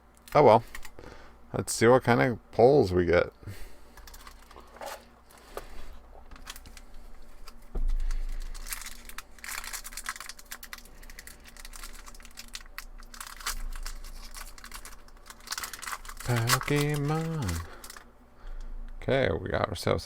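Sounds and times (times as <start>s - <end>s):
foil wrapper tearing and crinkling: 4.0s - 5.5s, 6.3s - 18.1s.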